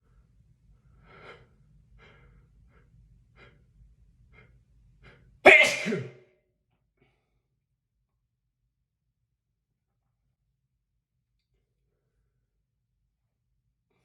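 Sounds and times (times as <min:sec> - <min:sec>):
faint catching breaths: 0:00.0 - 0:05.4
man sneezing: 0:05.5 - 0:06.2.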